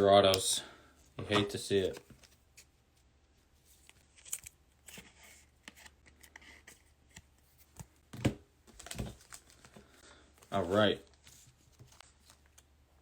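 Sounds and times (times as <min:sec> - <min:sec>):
cards and plastic sleeves rustling: 0:00.2 - 0:13.0.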